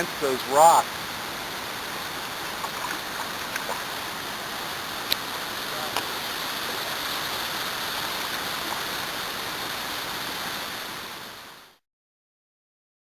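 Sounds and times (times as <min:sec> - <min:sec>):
water rushing over rocks: 0:00.0 - 0:11.7.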